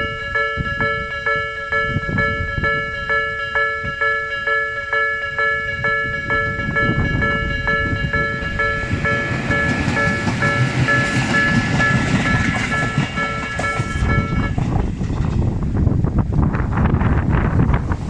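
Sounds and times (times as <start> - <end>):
level crossing warning bell ringing: 0.0 - 14.6
electric train rumbling past: 0.0 - 18.0.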